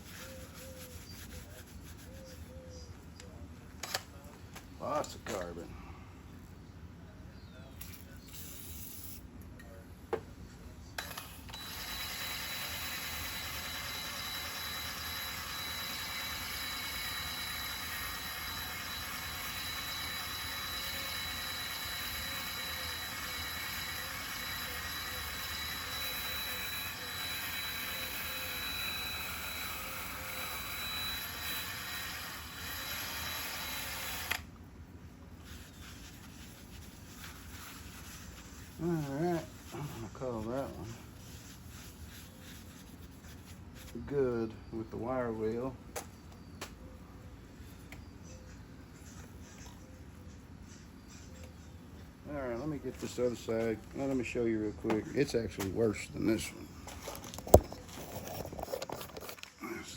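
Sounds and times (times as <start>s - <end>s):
wire wheel power tool whining: 11.0s - 34.5s.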